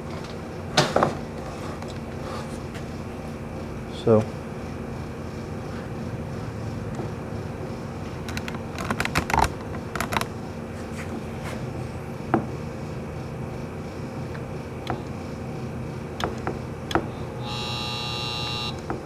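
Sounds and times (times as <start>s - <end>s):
compressor buzzing hum: 0.0s - 19.0s
sharp electrical clicks: 8.2s - 10.4s, 16.2s - 17.1s.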